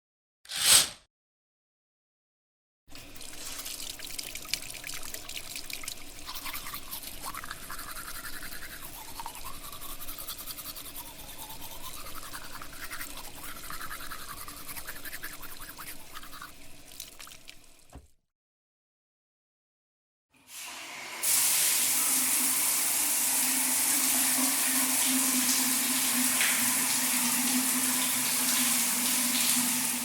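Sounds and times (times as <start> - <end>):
toothbrush scrubbing teeth: 3.0 - 17.7.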